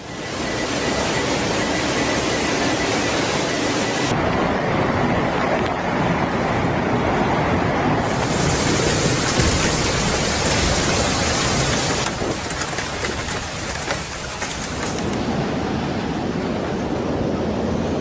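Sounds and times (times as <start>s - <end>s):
rain: 0.0s - 18.0s
wind: 0.0s - 18.0s.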